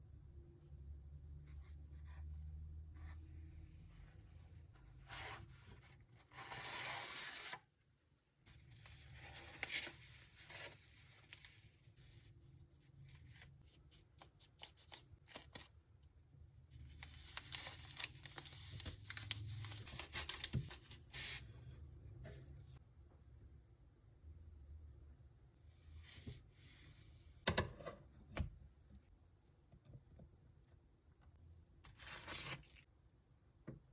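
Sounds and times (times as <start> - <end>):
packaging crinkling and rustling: 16.9 - 21.1.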